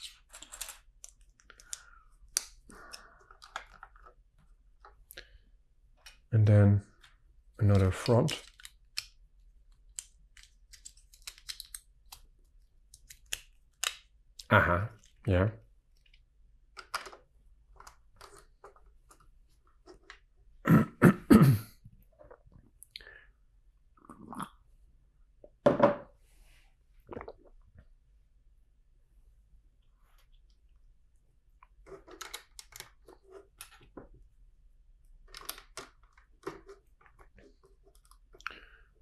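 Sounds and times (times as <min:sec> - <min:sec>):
plastic bricks clicking: 0:00.0 - 0:04.2, 0:07.7 - 0:09.2, 0:09.8 - 0:15.2, 0:16.1 - 0:18.5, 0:31.9 - 0:33.9, 0:35.2 - 0:37.3
person clearing throat: 0:20.6 - 0:21.8.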